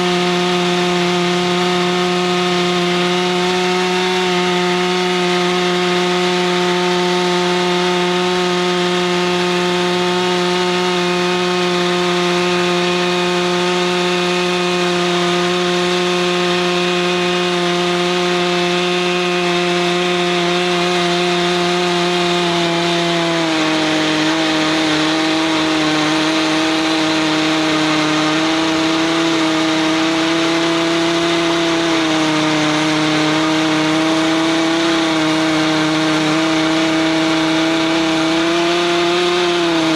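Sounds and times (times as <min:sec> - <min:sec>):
chainsaw cutting a log: 0:00.0 - 0:39.9.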